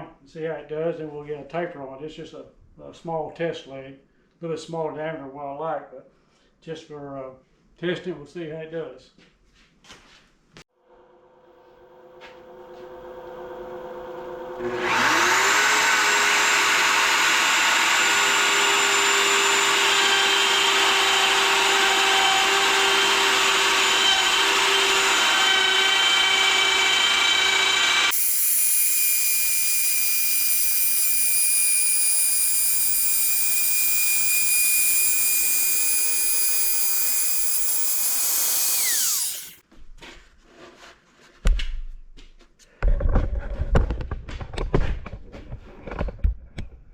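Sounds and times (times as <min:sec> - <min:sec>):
router motor whining: 0:12.4 - 0:39.6.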